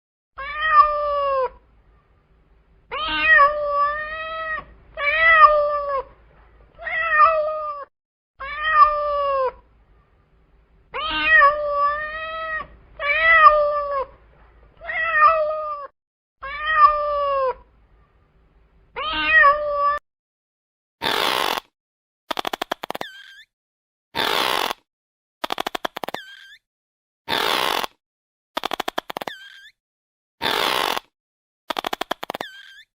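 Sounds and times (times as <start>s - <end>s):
cat meowing: 0.4s - 1.6s, 2.9s - 6.1s, 6.8s - 9.6s, 11.0s - 14.1s, 14.8s - 17.6s.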